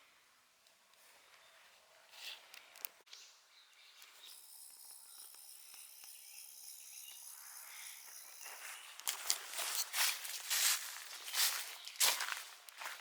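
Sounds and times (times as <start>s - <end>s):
faint high-pitched whine: 3.3s - 10.4s
footsteps: 8.3s - 13.0s.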